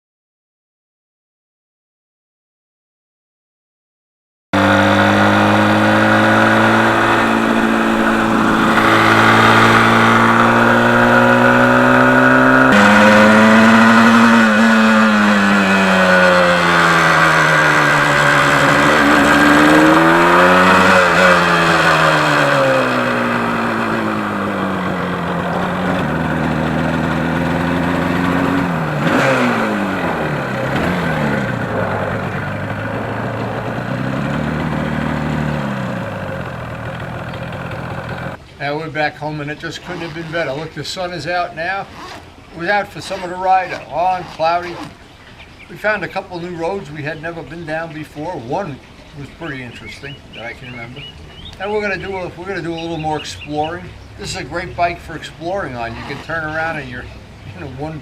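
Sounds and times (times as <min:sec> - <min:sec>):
motorcycle engine revving: 0:04.6 - 0:38.4, 0:41.8 - 0:45.0, 0:49.8 - 0:58.0.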